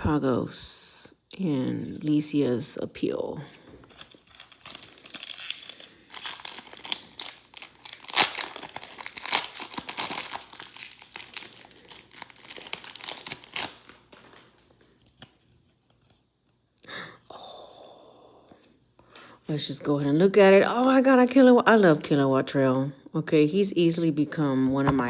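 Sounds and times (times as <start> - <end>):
foil wrapper crinkling and tearing: 3.6 - 16.3.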